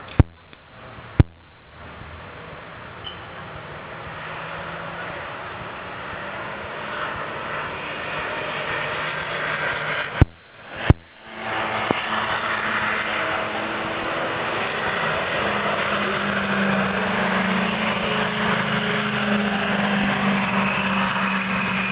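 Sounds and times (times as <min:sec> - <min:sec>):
sharp clicks: 0:00.0 - 0:00.6
car engine running: 0:00.0 - 0:21.9.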